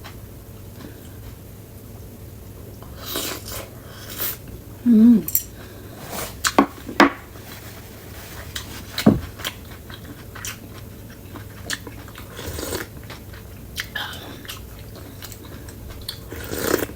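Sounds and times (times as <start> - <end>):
chewing noodles: 8.4 - 16.9.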